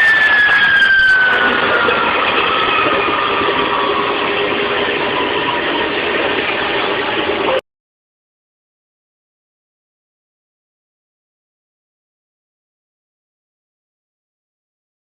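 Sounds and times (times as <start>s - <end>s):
milling machine spindle whine: 0.0s - 7.6s
steady machine noise: 0.0s - 7.6s.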